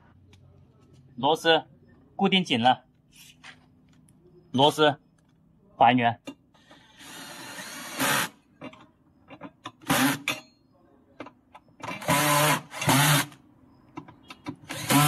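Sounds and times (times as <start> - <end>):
electric screwdriver driving screws: 11.9 - 13.4, 14.6 - 15.0.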